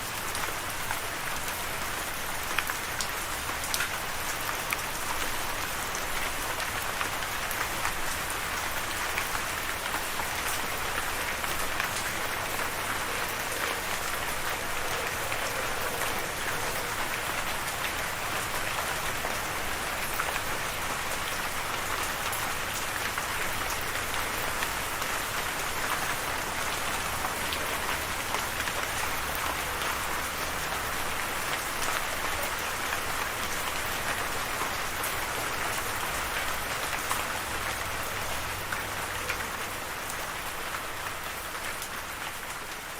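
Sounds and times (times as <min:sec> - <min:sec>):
rain on a hard surface: 0:00.0 - 0:42.9.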